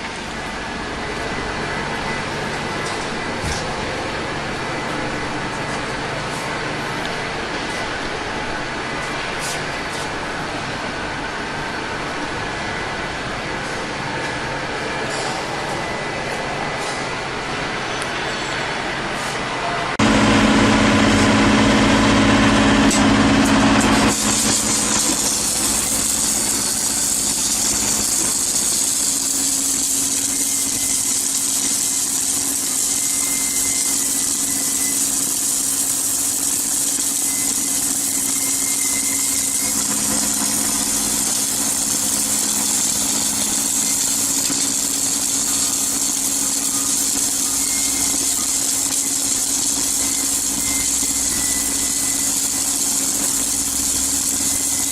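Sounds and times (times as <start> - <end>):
machine hum with high hiss: 0.0 - 54.9.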